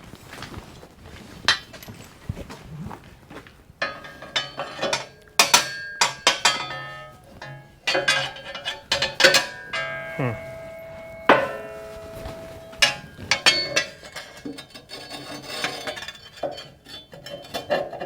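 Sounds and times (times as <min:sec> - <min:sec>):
hammer striking steel pin: 0:05.4 - 0:14.4.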